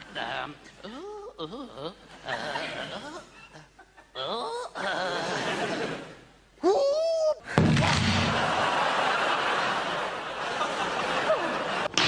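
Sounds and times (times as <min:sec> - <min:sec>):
theatre audience din: 0:08.2 - 0:12.0.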